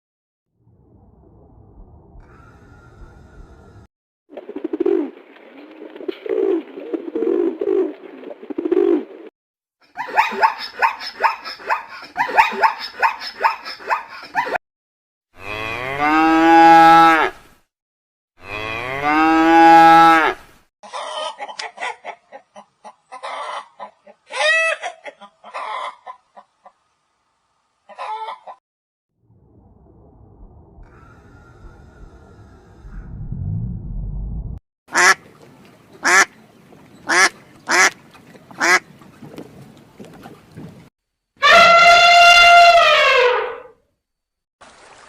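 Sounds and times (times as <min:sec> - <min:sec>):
fowl clucking: 0:10.0 - 0:14.6, 0:20.8 - 0:26.8, 0:27.9 - 0:28.6, 0:37.1 - 0:38.8
cow mooing: 0:15.4 - 0:17.3, 0:18.4 - 0:20.4.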